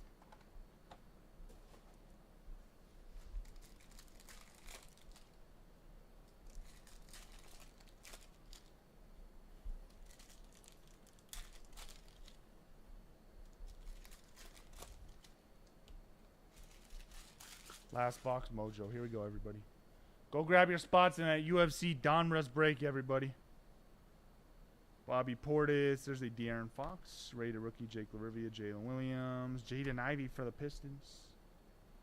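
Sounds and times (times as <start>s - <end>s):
card pack wrappers tearing: 3.4s - 5.4s, 6.4s - 8.8s, 9.9s - 12.4s, 13.7s - 15.4s, 16.5s - 18.4s.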